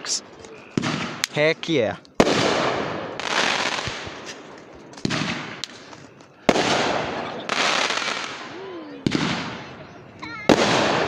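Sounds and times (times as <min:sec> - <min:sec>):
fireworks banging: 0:00.0 - 0:11.0
fireworks crackling hiss: 0:00.0 - 0:11.0.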